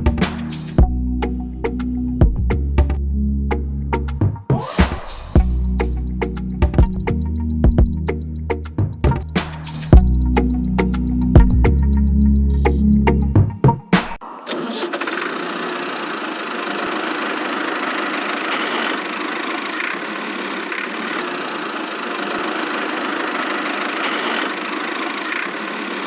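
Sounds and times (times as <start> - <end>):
small motor whirring: 14.9 - 26.0.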